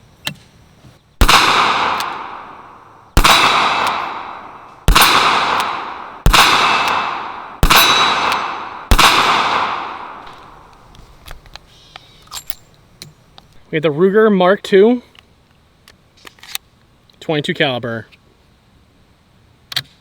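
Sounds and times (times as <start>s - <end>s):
revolver gunshots with echo: 1.2s - 10.7s.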